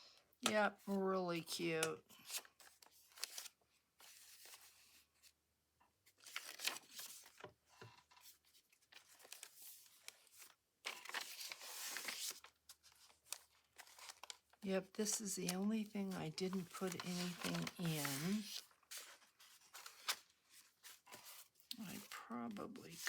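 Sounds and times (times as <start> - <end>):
paper rustling and tapping: 6.2 - 21.8.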